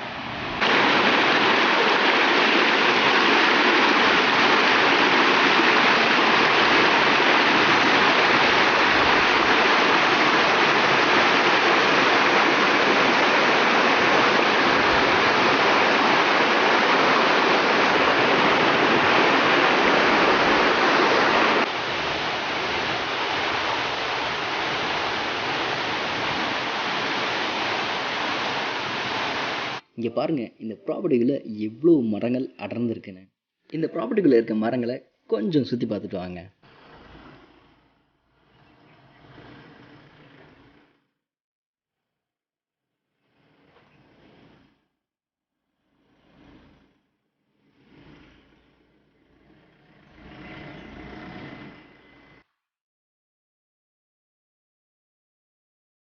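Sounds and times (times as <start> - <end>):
river and waterfall rushing: 0.0 - 29.8.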